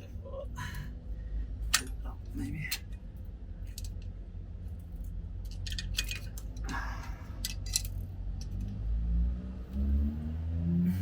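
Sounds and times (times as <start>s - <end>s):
low hum: 0.0s - 11.0s
metal tools clicking and clinking: 3.6s - 4.1s, 5.0s - 6.8s, 7.4s - 8.7s.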